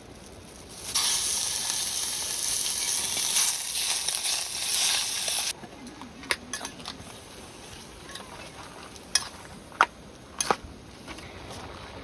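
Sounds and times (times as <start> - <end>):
faint sizzle: 0.0 - 12.0
utensils clinking on dishes: 6.3 - 7.1, 8.0 - 9.5.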